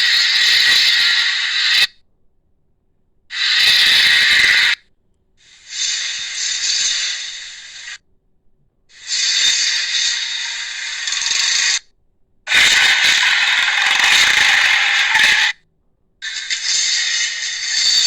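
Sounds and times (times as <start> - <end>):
harsh hissy creature roars: 12.5 - 15.6.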